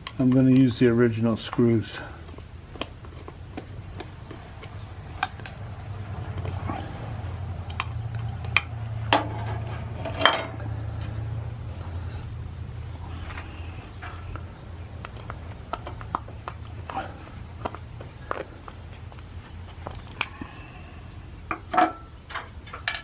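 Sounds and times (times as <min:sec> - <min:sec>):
steady low hum: 0:00.0 - 0:23.0
small metal parts clinking: 0:19.6 - 0:20.4, 0:21.7 - 0:23.0.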